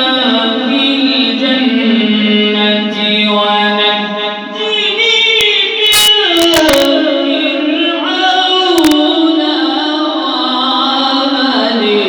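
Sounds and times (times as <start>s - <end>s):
man chanting melodically: 0.0s - 12.0s
short clicks: 5.4s - 6.9s, 8.8s - 9.0s.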